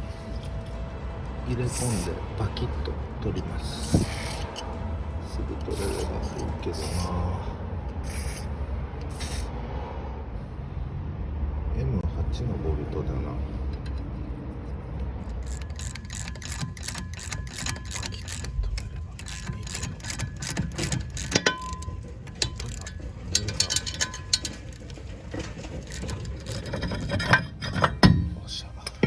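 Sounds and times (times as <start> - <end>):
socket ratchet clicking: 15.2 - 24.7
metallic knocks: 15.3 - 29.0.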